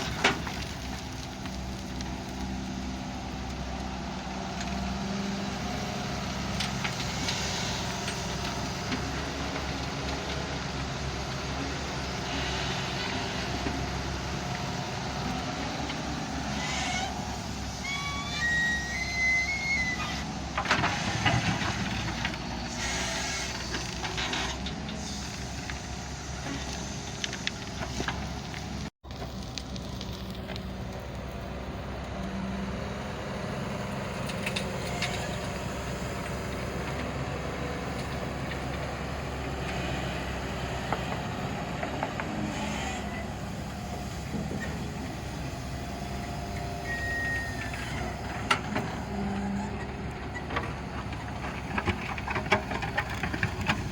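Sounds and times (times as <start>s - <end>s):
diesel engine running: 0.0s - 53.9s
short falling squeal: 16.6s - 20.2s, 46.8s - 48.1s.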